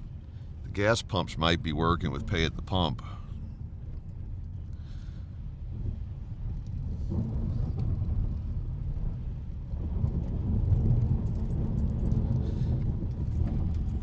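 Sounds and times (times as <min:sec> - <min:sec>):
faint clicks and crackles: 0:00.0 - 0:14.0
tyre and engine rumble: 0:00.0 - 0:14.0.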